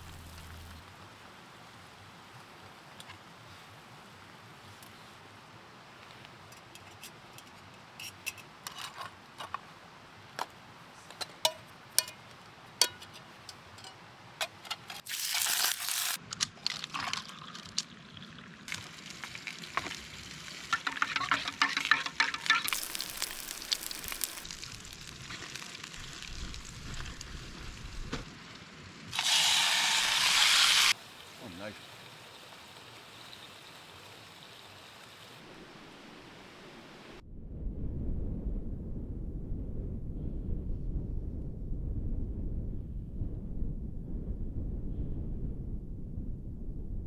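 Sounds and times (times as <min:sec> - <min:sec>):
stove hissing and sizzling: 0:00.0 - 0:09.6, 0:10.4 - 0:16.2, 0:18.7 - 0:37.2
metal pot and utensils clicking: 0:06.5 - 0:09.5, 0:11.1 - 0:15.8, 0:20.7 - 0:24.4
liquid being poured: 0:18.7 - 0:24.8.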